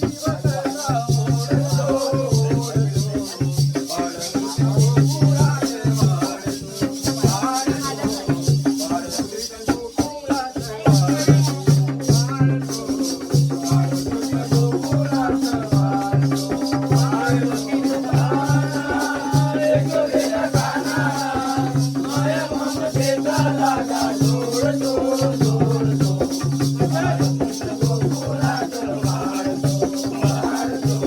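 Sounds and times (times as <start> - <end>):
jingling percussion: 0.0 - 31.0
person singing: 10.0 - 31.0.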